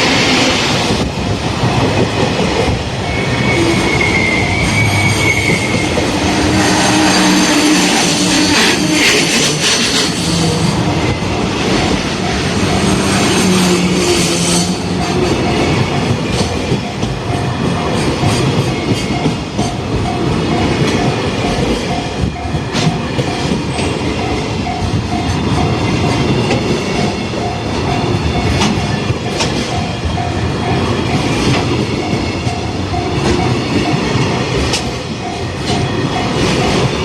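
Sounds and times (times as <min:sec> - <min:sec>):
freight train wagons rumbling: 0:00.0 - 0:37.0
wheel squeal: 0:03.0 - 0:10.8
level-crossing bell dinging: 0:10.4 - 0:13.9, 0:14.8 - 0:37.0.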